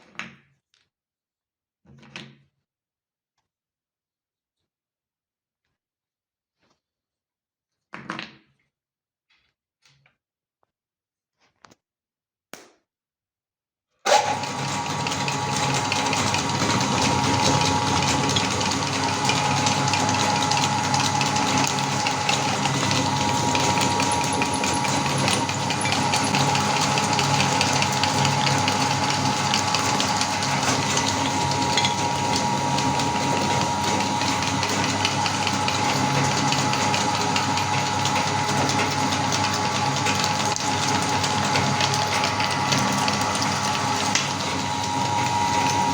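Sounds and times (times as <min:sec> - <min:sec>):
electric meat grinder motor whine: 0:14.1 - 0:45.9.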